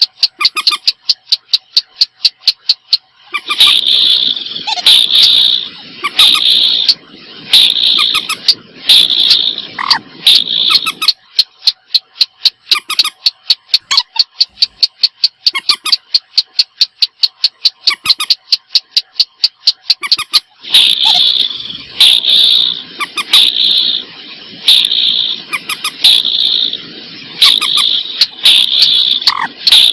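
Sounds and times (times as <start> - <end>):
sharp clicking bird notes: 0.0 - 7.0, 7.6 - 23.9, 24.7 - 26.4, 27.4 - 29.9
harsh bird calls: 3.2 - 11.2, 20.0 - 29.9.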